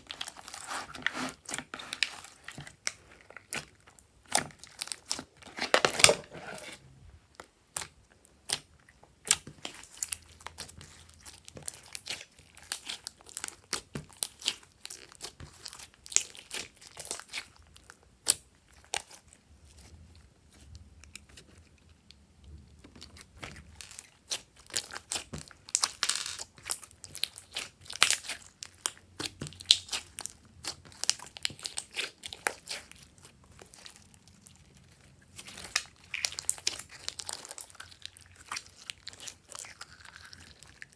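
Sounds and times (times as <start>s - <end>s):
slime squished by hand: 23.0s - 40.9s.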